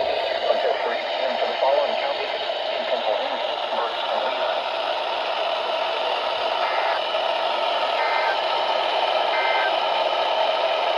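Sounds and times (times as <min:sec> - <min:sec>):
radio static hiss: 0:00.0 - 0:04.6, 0:05.6 - 0:07.1, 0:09.2 - 0:10.0
two-tone data bursts: 0:06.6 - 0:07.1, 0:07.9 - 0:08.5, 0:09.2 - 0:09.9.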